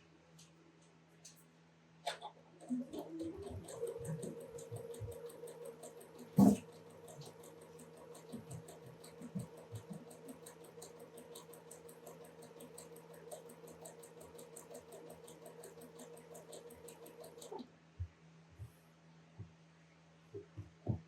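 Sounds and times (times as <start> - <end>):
sewing machine motor hum: 2.6 - 17.6
needle ticking: 2.7 - 17.6.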